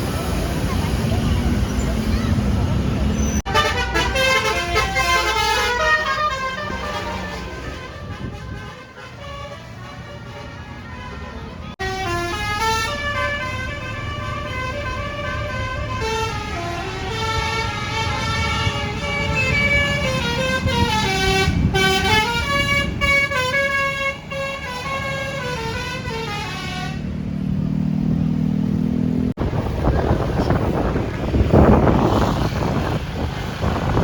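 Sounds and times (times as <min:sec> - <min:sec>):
bus horn playing a tune: 0:03.5 - 0:27.2.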